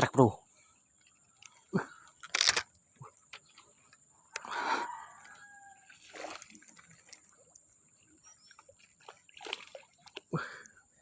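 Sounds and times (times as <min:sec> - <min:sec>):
fish splashing in water: 0:04.9 - 0:10.7.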